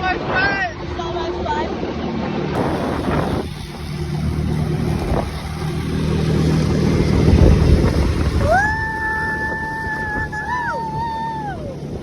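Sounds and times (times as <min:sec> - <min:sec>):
wind on microphone: 0:00.2 - 0:12.0
high gliding tone: 0:02.6 - 0:12.0
motorboat engine running: 0:02.6 - 0:12.0.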